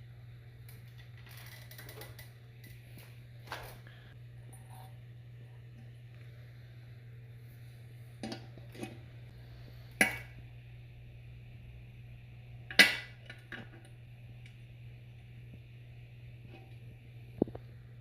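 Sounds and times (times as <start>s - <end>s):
low hum: 0.0s - 18.0s.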